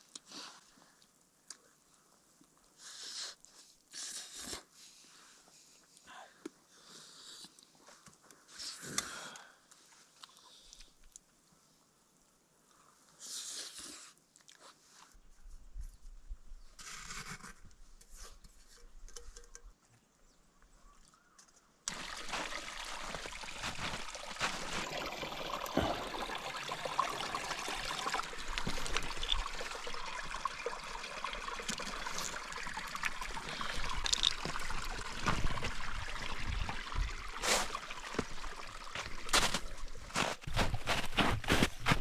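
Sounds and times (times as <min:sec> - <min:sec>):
water trickling: 0:21.9 - 0:41.6.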